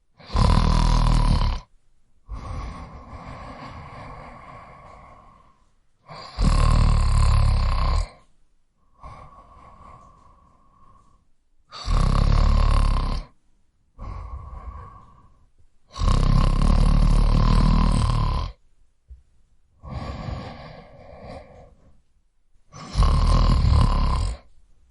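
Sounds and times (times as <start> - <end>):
quiet breaths: 0.0 - 24.9
man snoring loudly: 0.2 - 1.7, 2.3 - 8.2, 11.7 - 13.4, 14.0 - 18.6, 19.8 - 21.7, 22.7 - 24.5.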